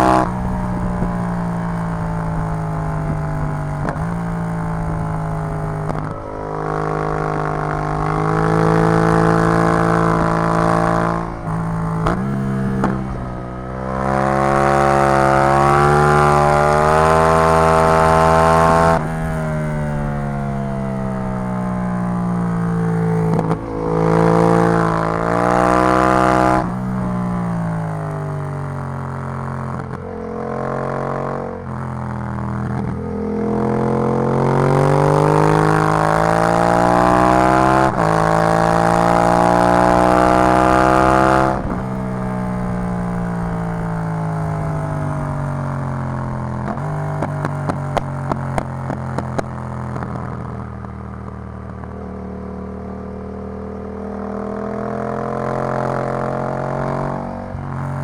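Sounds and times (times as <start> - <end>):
exhaust pops and crackles: 0.0 - 6.2, 10.1 - 13.4, 26.5 - 30.8, 31.6 - 33.0, 41.4 - 52.2
motorcycle engine revving: 0.0 - 58.0.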